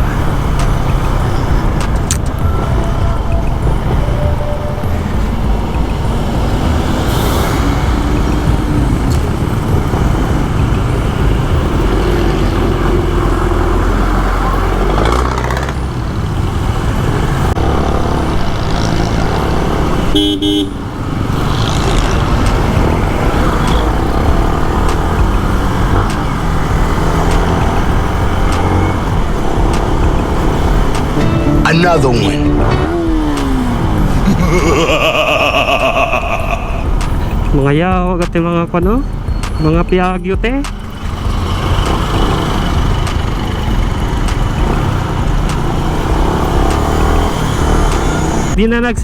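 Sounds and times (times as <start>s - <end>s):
motorcycle engine: 0.0s - 48.7s
vehicle horn toot: 19.8s - 20.9s, 31.2s - 33.4s.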